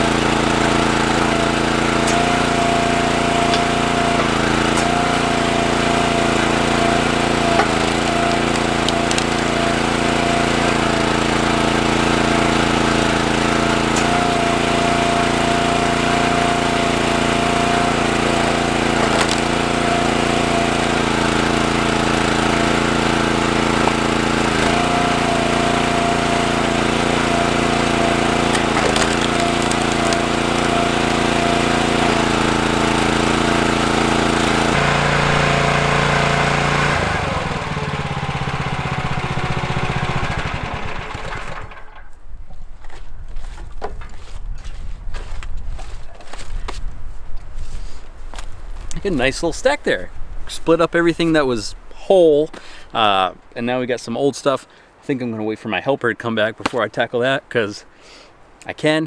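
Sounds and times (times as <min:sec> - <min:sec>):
wood cracking: 0:00.0 - 0:35.7, 0:56.6 - 0:57.1
log splitter gas engine running: 0:00.0 - 0:42.2, 0:47.6 - 0:51.6.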